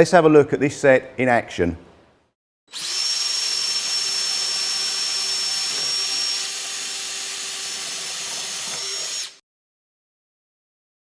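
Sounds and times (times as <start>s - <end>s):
power drill boring wood: 2.7s - 9.4s.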